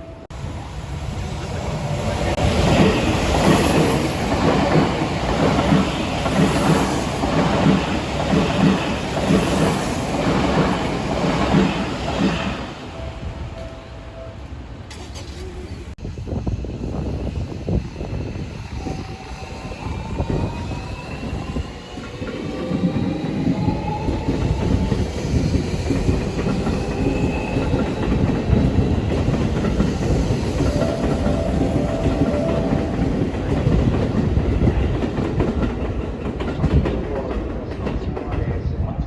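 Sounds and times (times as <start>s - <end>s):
train wheels clattering on rails: 2.3s - 12.7s, 20.0s - 38.7s.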